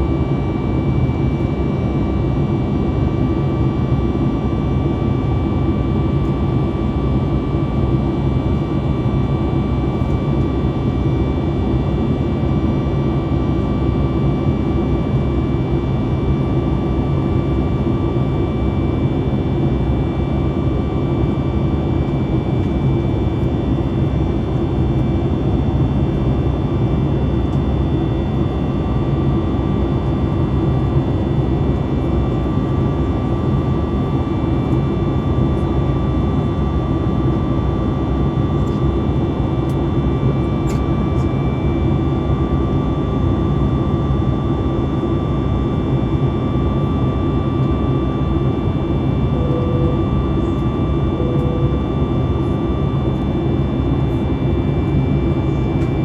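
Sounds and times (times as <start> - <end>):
jet engine and air rumble: 0.0 - 56.0
faint high whine: 48.5 - 52.9.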